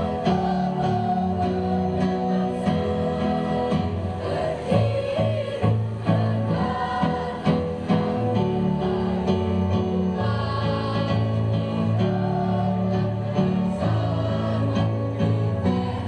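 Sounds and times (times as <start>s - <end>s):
choir singing in unison: 0.0s - 16.0s.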